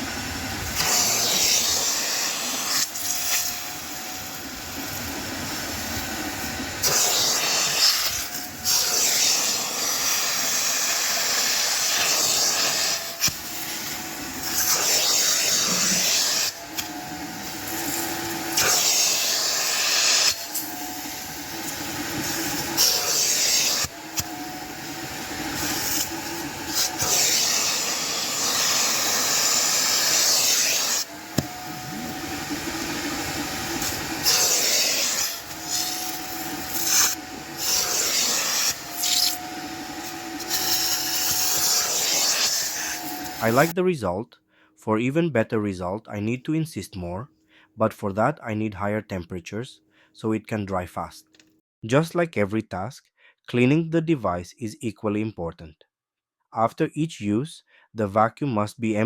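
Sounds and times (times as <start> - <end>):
wet-dry vacuum running: 0.0 - 43.7.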